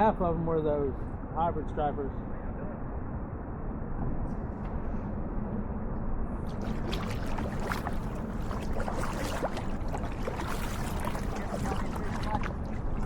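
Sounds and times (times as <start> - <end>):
water splashing and dripping: 6.5 - 13.0.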